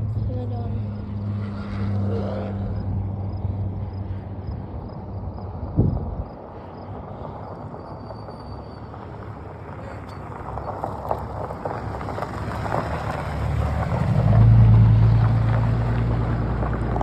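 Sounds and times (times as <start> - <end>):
large engine drone: 0.0 - 7.1
wind on microphone: 4.5 - 6.4.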